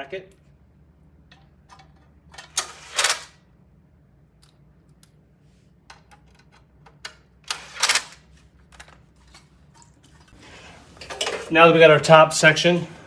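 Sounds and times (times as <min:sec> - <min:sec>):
metal parts clicking and knocking: 0:01.3 - 0:03.3.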